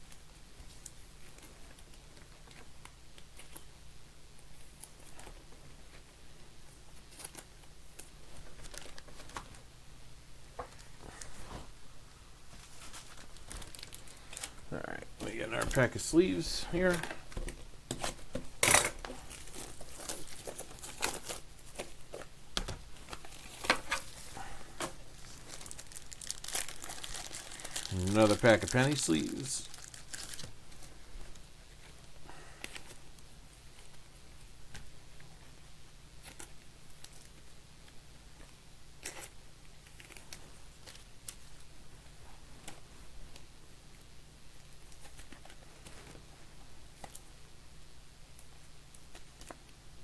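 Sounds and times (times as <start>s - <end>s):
plastic sleeve rustles: 6.8s - 9.7s, 12.5s - 17.4s, 19.0s - 22.3s, 22.9s - 34.8s
plastic pack crinkling: 7.1s - 9.6s, 12.5s - 17.4s, 19.1s - 22.3s, 23.0s - 32.0s.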